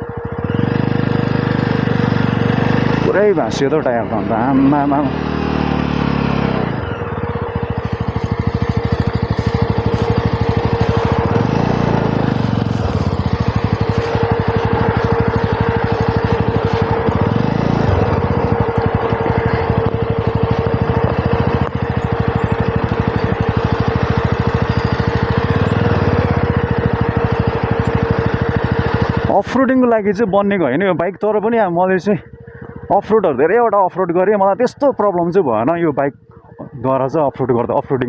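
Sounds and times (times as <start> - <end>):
motorcycle engine running: 0.0 - 38.0.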